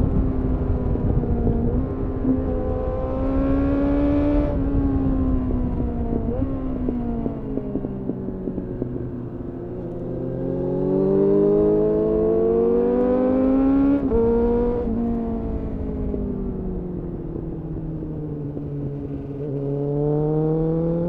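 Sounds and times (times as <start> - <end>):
motorcycle engine revving: 18.5 - 21.0.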